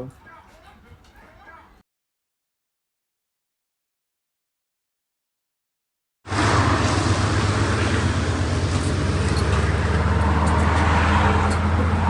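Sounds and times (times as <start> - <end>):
road traffic rumble: 6.3 - 12.0.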